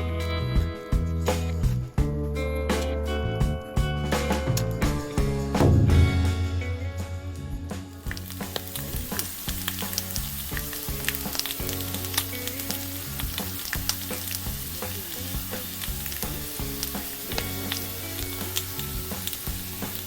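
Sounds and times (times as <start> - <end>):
food sizzling on a grill: 8.0 - 20.0.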